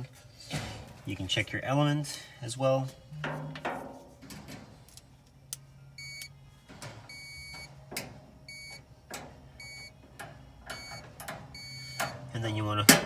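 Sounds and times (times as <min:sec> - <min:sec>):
low steady hum: 0:00.0 - 0:13.0
short electronic beeps: 0:06.0 - 0:06.3, 0:07.1 - 0:07.7, 0:09.6 - 0:09.9, 0:11.6 - 0:12.1.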